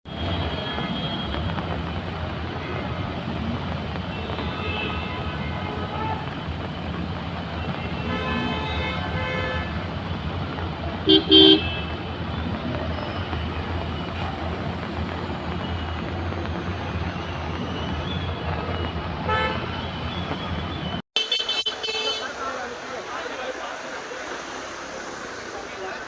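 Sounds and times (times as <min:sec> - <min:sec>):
road traffic hum: 0:00.0 - 0:26.0
vehicle horns honking: 0:07.9 - 0:09.8, 0:11.1 - 0:12.1, 0:19.3 - 0:20.0, 0:21.2 - 0:22.3.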